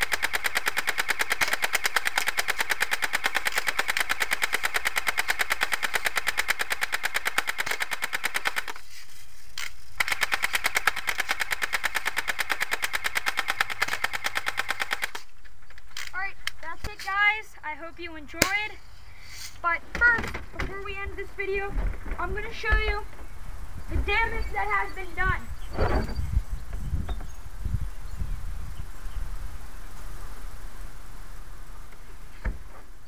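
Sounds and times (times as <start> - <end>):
airsoft gun firing full auto: 0.0 - 8.8, 9.6 - 15.3.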